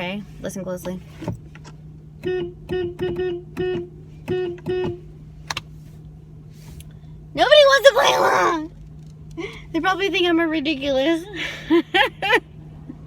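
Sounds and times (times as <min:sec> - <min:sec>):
car horn short beeps: 0:02.2 - 0:05.1.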